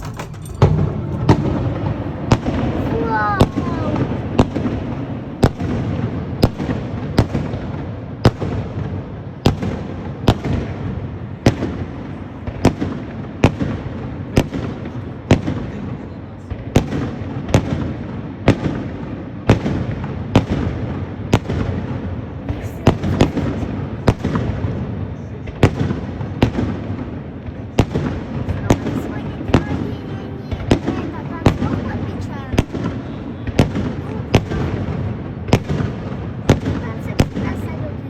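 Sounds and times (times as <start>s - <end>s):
fireworks shells exploding: 0.0s - 6.7s.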